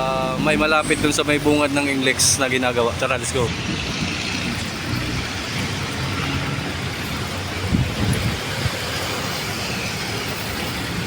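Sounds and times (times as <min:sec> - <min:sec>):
cars passing: 0:00.0 - 0:11.0.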